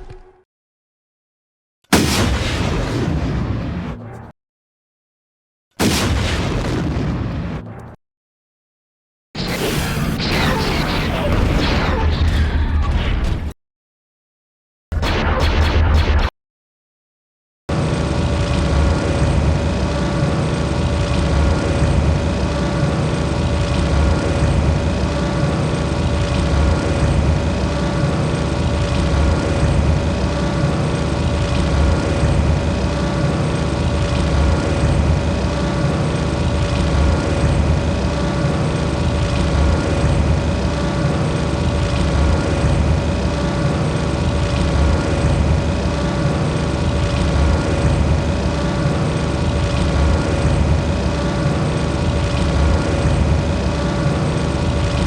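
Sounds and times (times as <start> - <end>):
heavy mechanical drone with whine: 9.4 - 13.6, 17.7 - 55.0.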